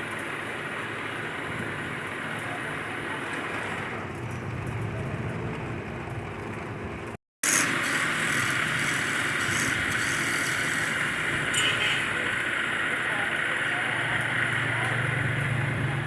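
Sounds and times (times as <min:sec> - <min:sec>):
wood lathe cutting wood: 0:07.4 - 0:11.6.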